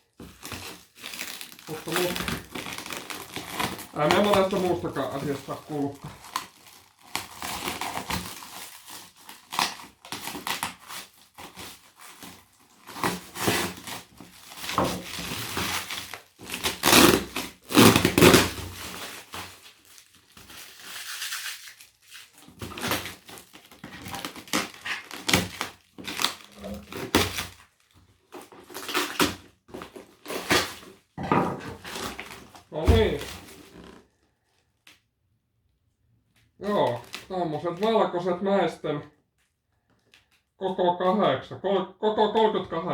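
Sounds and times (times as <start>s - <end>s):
cardboard rustling and crinkling: 0.0s - 34.6s, 36.6s - 38.1s.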